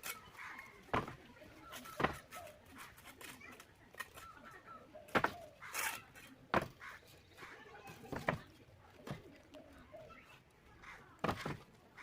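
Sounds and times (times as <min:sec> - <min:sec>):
trowel scrape: 0:05.1 - 0:06.7
trowel knocking on brick: 0:06.5 - 0:06.8, 0:11.2 - 0:11.6.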